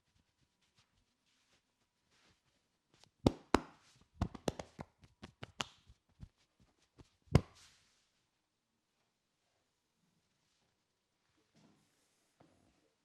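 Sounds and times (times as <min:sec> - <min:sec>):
hands slapping in massage: 0:03.2 - 0:06.3, 0:07.0 - 0:07.6.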